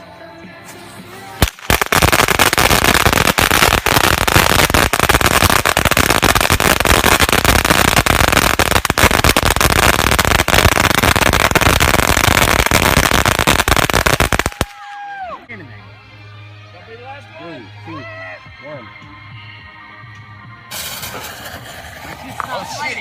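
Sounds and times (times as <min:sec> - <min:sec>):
firecrackers popping: 0:01.4 - 0:15.0, 0:20.7 - 0:23.0.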